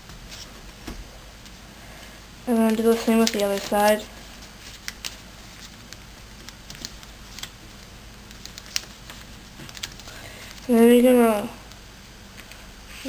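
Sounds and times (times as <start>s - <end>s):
paper crinkling while folded: 2.5s - 10.8s.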